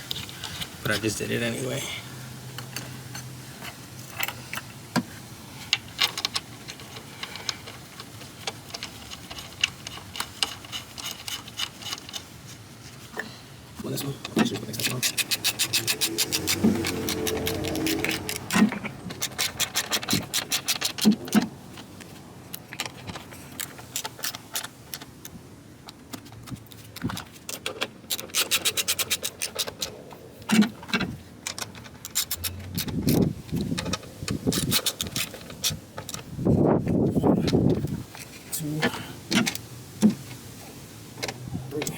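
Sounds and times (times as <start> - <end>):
hand ratchet clicking: 14.6 - 21.1, 31.5 - 35.8.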